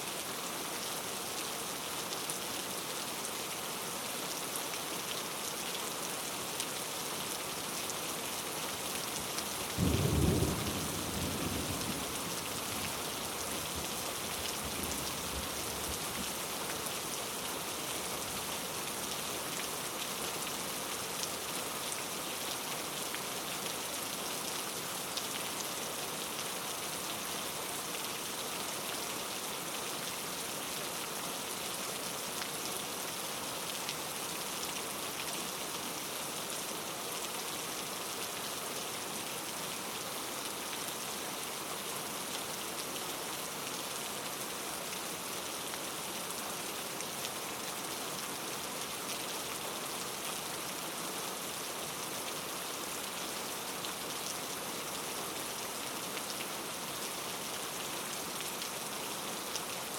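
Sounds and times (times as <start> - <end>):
steady rain falling: 0.0 - 59.9
low rumble of thunder: 9.8 - 12.4.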